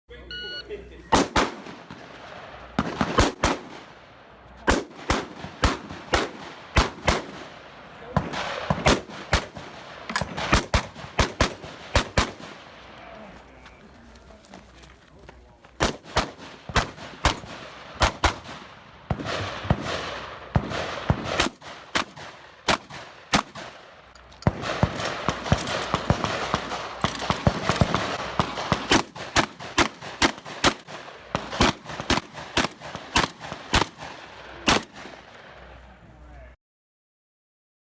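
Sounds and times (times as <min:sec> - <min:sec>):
single gunshots: 0:01.1 - 0:04.0, 0:04.6 - 0:07.5, 0:08.1 - 0:12.7, 0:15.8 - 0:23.8, 0:24.4 - 0:35.3.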